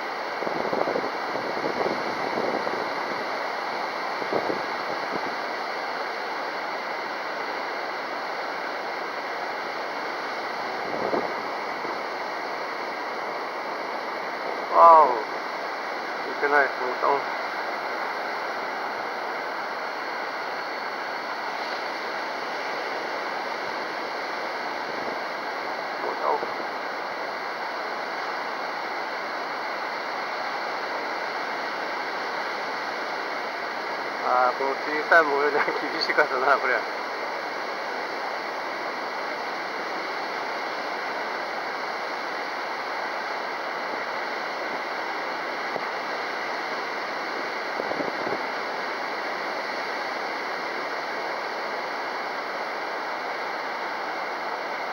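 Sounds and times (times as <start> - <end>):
wind rushing across microphone: 0.3 - 3.4, 4.1 - 5.4, 10.6 - 12.0, 24.8 - 25.2, 47.3 - 48.5.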